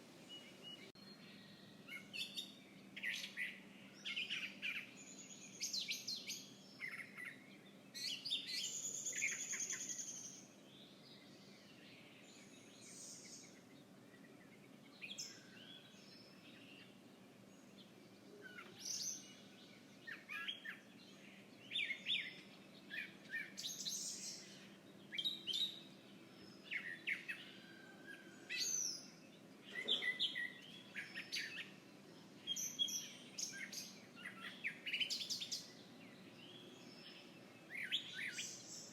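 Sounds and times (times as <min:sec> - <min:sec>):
faint steady hum: 0:00.0 - 0:38.9
songbirds chirping and trilling: 0:00.0 - 0:38.9.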